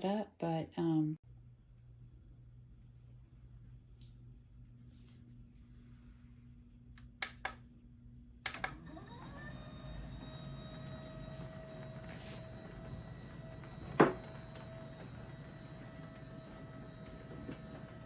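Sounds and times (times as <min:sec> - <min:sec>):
desk lift motor whining and humming: 0:08.4 - 0:18.0.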